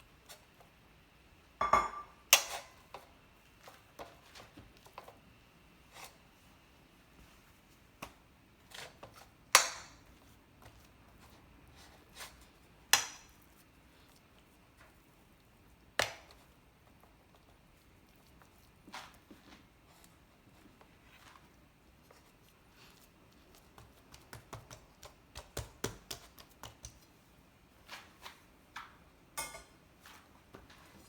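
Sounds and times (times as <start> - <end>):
kitchen utensils knocking and clinking: 1.6 - 2.6, 29.4 - 29.8.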